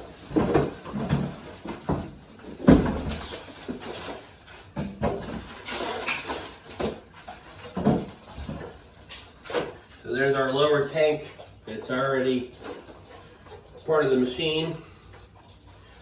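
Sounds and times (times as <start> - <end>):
plastic parts knocking and scraping: 0.0 - 10.0.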